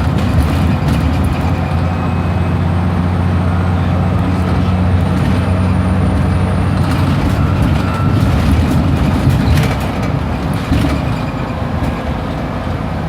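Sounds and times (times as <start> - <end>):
bus engine humming: 0.0 - 13.0.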